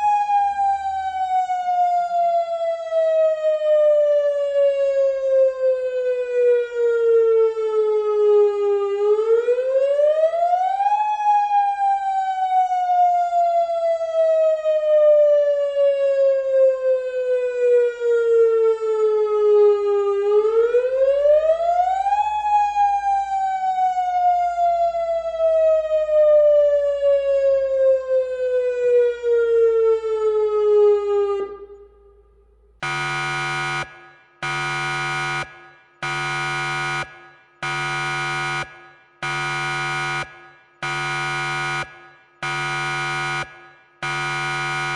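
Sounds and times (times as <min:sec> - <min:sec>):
electronic warning siren wailing: 0:32.8 - 0:44.9
harsh buzzer beeps: 0:32.8 - 0:44.9.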